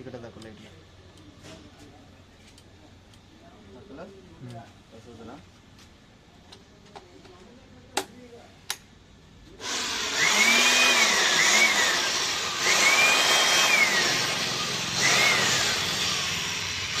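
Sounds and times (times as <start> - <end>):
air blower motor whine: 9.5 - 17.0.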